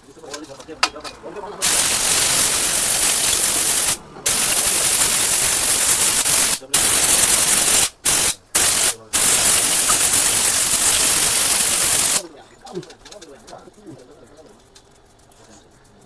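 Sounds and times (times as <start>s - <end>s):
pressurised spray hissing: 1.6s - 12.3s.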